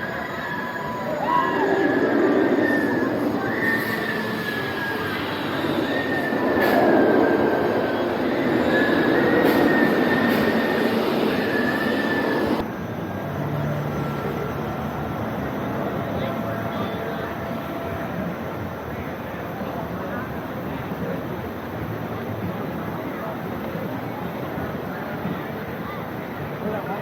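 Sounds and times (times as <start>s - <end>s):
steel wheels squealing on track: 0.0s - 12.6s.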